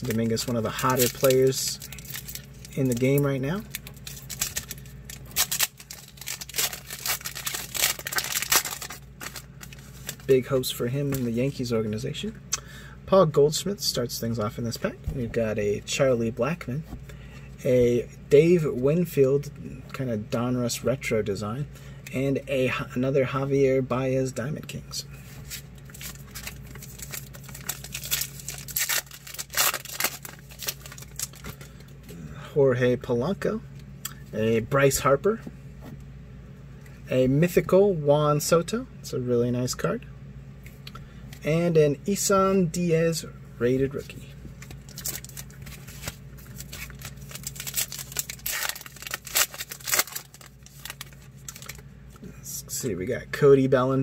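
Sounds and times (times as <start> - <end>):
wrapper tearing and crinkling: 0.0 - 10.3, 25.5 - 31.7, 44.6 - 51.8
cards shuffled: 44.9 - 51.8.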